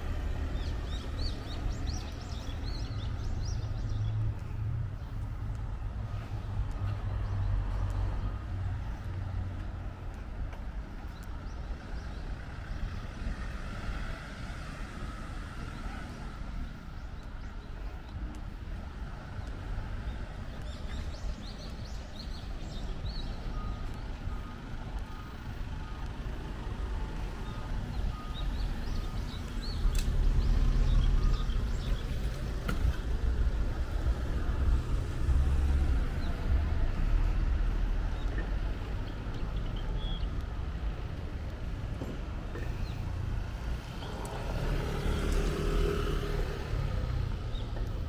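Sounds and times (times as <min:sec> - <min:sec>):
passing traffic rumble: 0:00.0 - 0:48.0
small birds chirping: 0:00.3 - 0:08.3, 0:15.0 - 0:34.2, 0:37.3 - 0:41.6.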